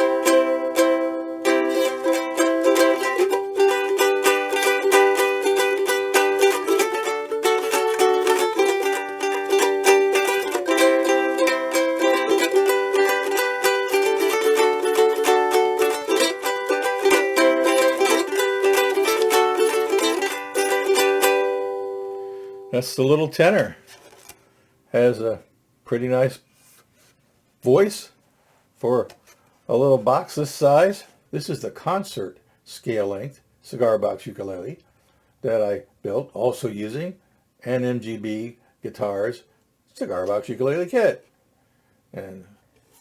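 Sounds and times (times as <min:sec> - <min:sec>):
ukulele strumming chords: 0:00.0 - 0:24.3.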